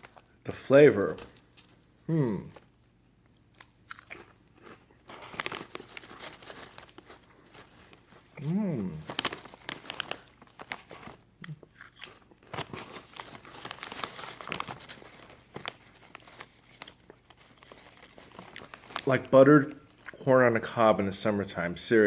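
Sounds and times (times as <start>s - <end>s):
person crunching potato chips: 3.5s - 20.2s.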